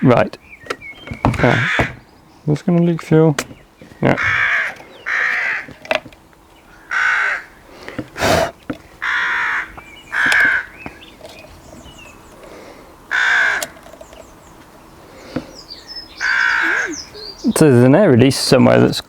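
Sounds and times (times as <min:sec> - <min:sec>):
crow cawing: 0:01.4 - 0:02.0, 0:04.2 - 0:05.8, 0:06.7 - 0:07.8, 0:09.0 - 0:11.0, 0:12.5 - 0:13.9, 0:16.1 - 0:17.4.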